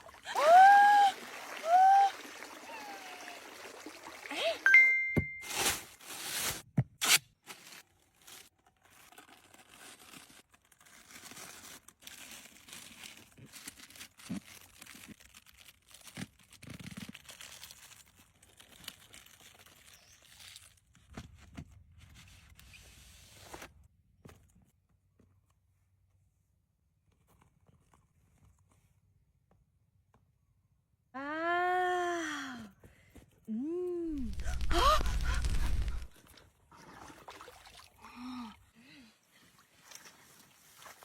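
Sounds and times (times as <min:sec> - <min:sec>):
tearing and crinkling: 0:05.4 - 0:21.2, 0:34.1 - 0:36.2.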